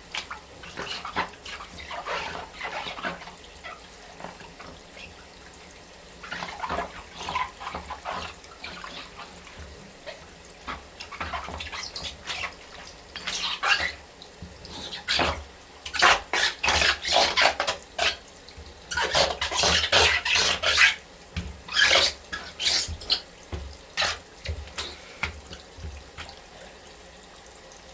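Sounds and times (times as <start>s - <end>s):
shower water running: 0.0s - 27.9s
wet sneakers squeaking: 21.7s - 23.2s.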